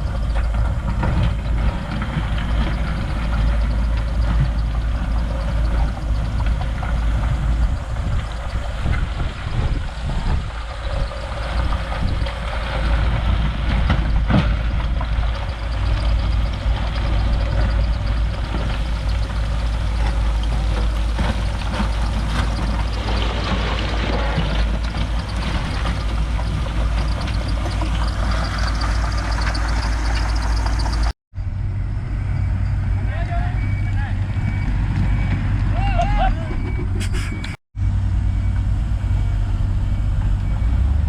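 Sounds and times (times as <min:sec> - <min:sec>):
metal clanks and rattles: 0:00.0 - 0:31.1
heavy machinery engine rumble: 0:00.0 - 0:41.0.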